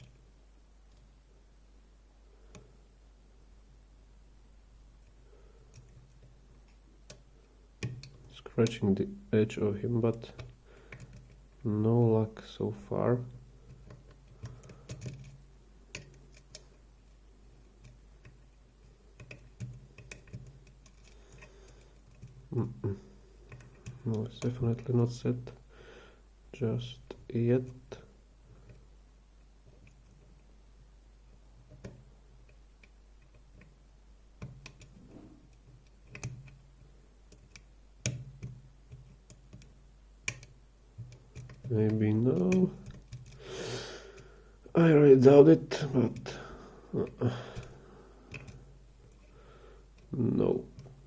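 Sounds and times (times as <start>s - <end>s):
lock pick clicking and scraping: 13.7s - 16.8s, 17.6s - 22.5s, 34.4s - 36.6s, 37.3s - 41.7s.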